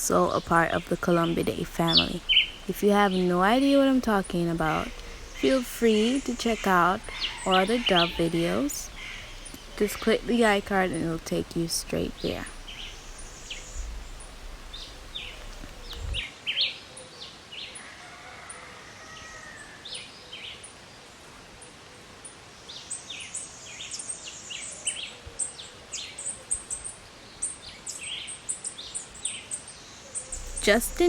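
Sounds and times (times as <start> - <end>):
small birds chirping: 0.0 - 17.8, 22.3 - 31.0
outdoor background hiss: 0.0 - 31.0
low rumble: 11.1 - 16.2.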